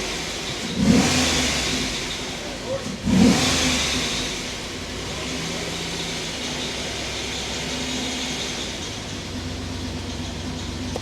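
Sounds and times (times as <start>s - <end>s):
engine idling: 4.3s - 11.0s.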